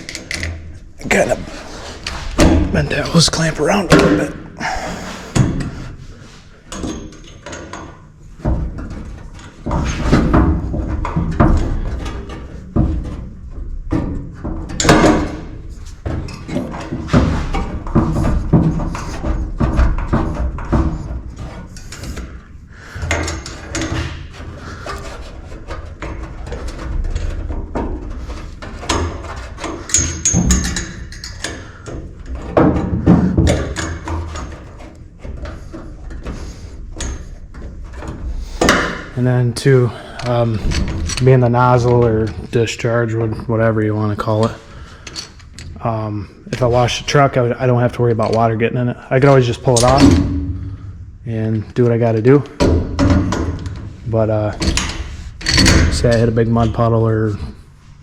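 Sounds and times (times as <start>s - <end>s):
knocks and clatter on metal: 0.0s - 45.8s, 49.3s - 57.5s
metal hardware rattling: 5.4s - 45.8s, 51.8s - 57.3s.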